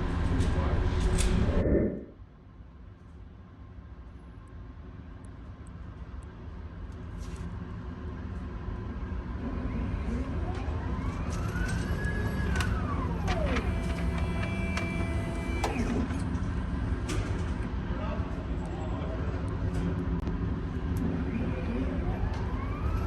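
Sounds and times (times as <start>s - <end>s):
low vehicle rumble: 0.0s - 2.2s
siren-like tone: 1.4s - 2.2s.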